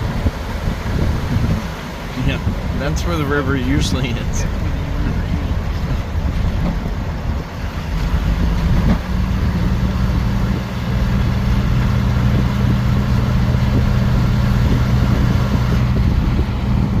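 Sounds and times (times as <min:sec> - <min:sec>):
road noise: 0:00.0 - 0:17.0
vehicle engine hum: 0:00.0 - 0:17.0.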